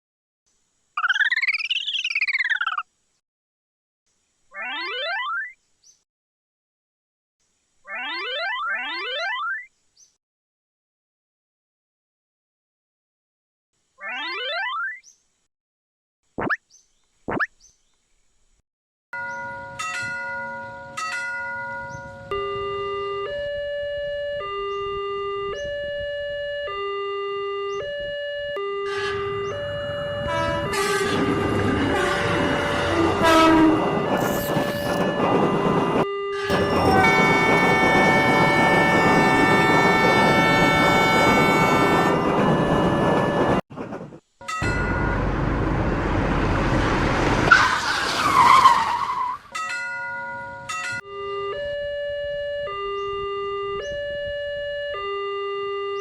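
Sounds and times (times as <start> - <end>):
two-tone crossing alarm: 19.2 - 43.6, 44.4 - 45.9, 49.5 - 56.0
approaching train: 28.8 - 51.0
vehicle rushing with low rumble: 43.7 - 48.4
high tyre squeal: 47.3 - 49.6.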